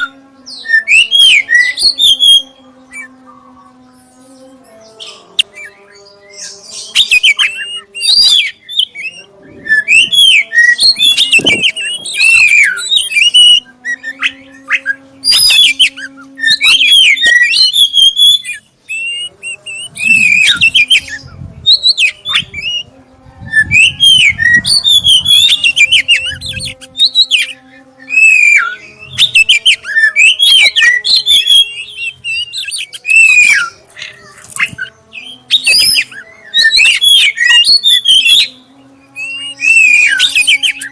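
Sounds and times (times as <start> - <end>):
bird singing whistled phrases: 6.9 - 22.9, 23.5 - 38.6.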